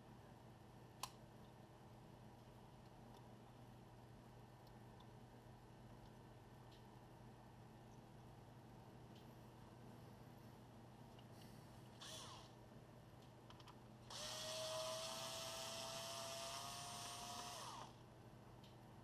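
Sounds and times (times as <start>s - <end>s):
electric screwdriver whirring: 12.0s - 12.5s, 14.1s - 18.0s.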